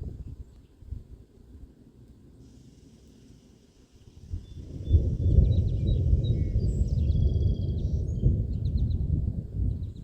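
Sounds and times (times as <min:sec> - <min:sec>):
wind buffeting microphone: 0:00.0 - 0:01.2, 0:04.0 - 0:10.0
birds chirping and trilling: 0:03.8 - 0:10.0.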